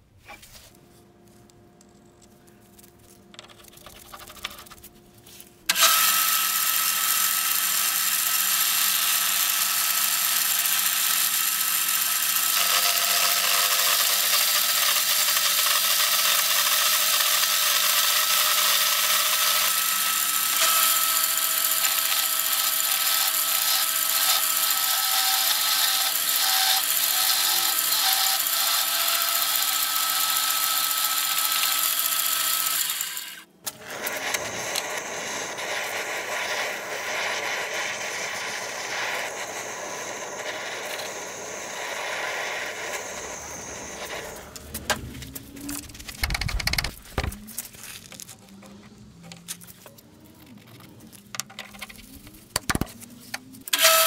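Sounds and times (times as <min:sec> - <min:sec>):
loud steady cutting noise: 0:05.7 - 0:47.7
machine motor humming: 0:33.7 - 0:47.6.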